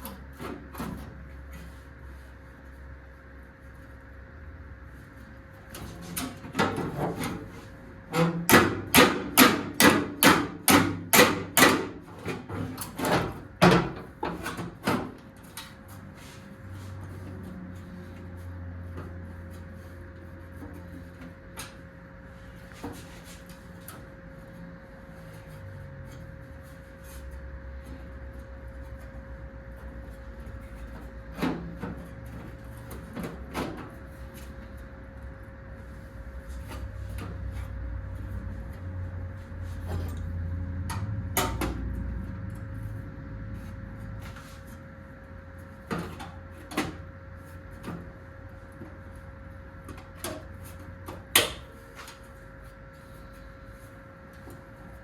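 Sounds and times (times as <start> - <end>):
hammer striking sheet metal: 8.5 - 12.0.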